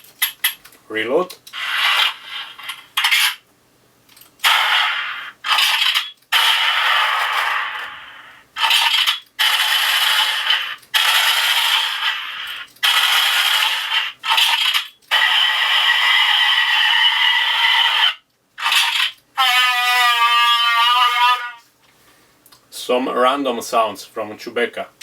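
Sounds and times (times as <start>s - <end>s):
electronic weapon sound effects: 4.4s - 8.0s, 8.6s - 17.1s.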